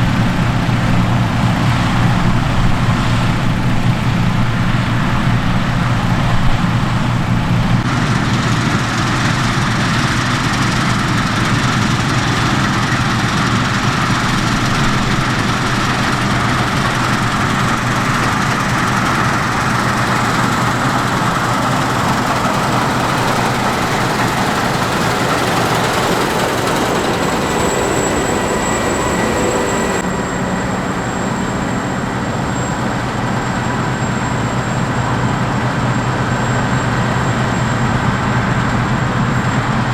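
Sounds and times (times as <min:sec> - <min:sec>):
diesel farm machinery running: 0:00.0 - 0:39.9.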